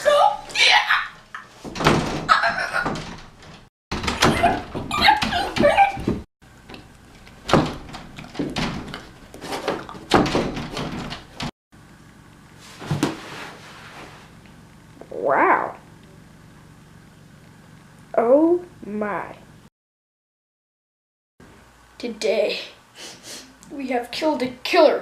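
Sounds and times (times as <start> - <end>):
heavy thuds and knocks: 1.6 - 6.2, 7.5 - 11.5.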